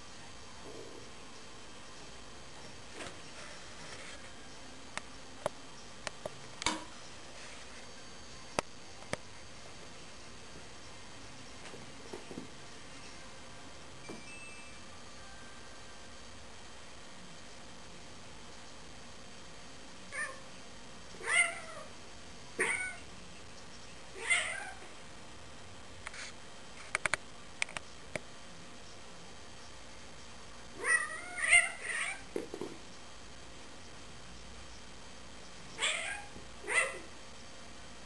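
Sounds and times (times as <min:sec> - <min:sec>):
cat meowing: 0:22.6 - 0:23.0, 0:24.2 - 0:24.8, 0:30.8 - 0:32.3, 0:35.8 - 0:37.0.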